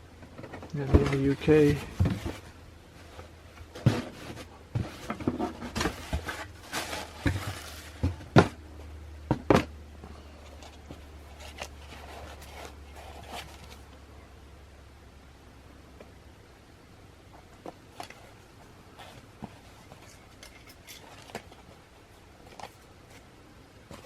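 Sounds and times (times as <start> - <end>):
steady low hum: 0.0 - 24.0
sneaker packaging rustling and knocks: 0.8 - 2.5, 3.6 - 8.6.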